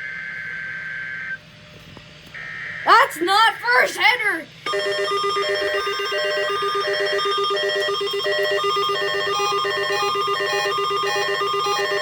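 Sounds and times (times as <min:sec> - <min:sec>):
alternating higher beeps: 0:04.7 - 0:12.0
fast low beeping: 0:04.7 - 0:12.0.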